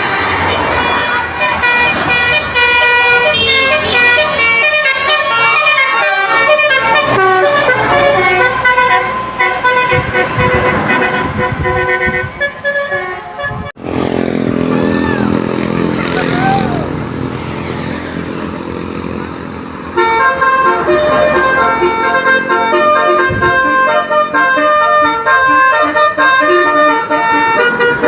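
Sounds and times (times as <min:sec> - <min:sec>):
musical vehicle horn tune: 0:00.0 - 0:13.9, 0:19.9 - 0:28.0
road noise: 0:00.0 - 0:28.0
engine running: 0:01.4 - 0:11.8, 0:13.8 - 0:28.0
voices: 0:14.7 - 0:17.0.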